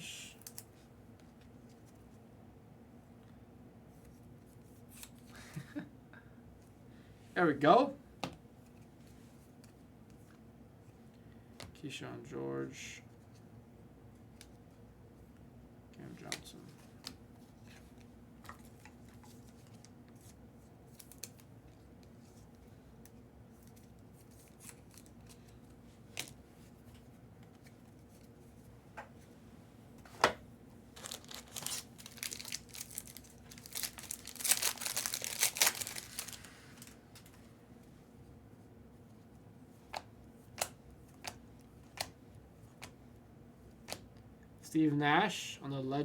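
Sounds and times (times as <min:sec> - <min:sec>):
card pack wrapper tearing: 0:31.0 - 0:37.0.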